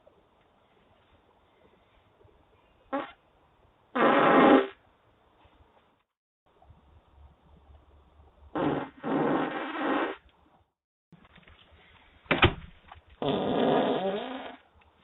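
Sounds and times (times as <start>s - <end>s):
drawn-out farts: 4.0s - 4.8s, 8.5s - 10.2s, 13.2s - 14.7s.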